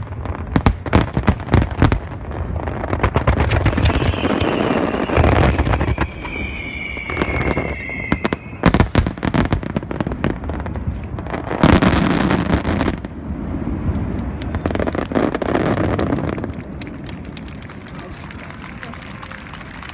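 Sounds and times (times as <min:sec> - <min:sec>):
firework crackling burst: 0:00.0 - 0:19.9
firework cracks and bangs: 0:00.0 - 0:19.9
firework falling whistle: 0:03.4 - 0:09.6.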